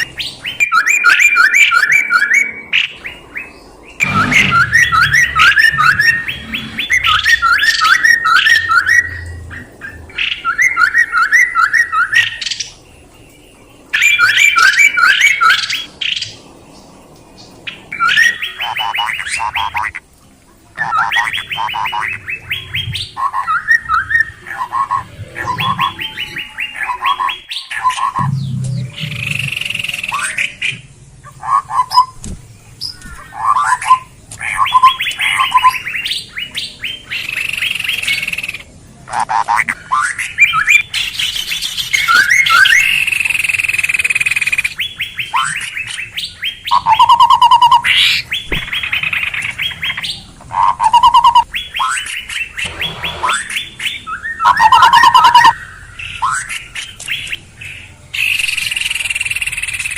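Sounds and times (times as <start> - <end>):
songbird chirping: 0.0 - 59.9.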